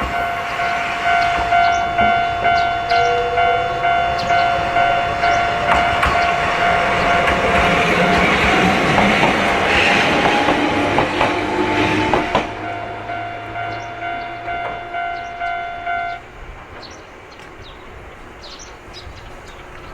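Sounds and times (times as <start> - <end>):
train wheels clattering over rails: 0.0 - 12.8
crossing warning bell clanging: 0.0 - 17.6.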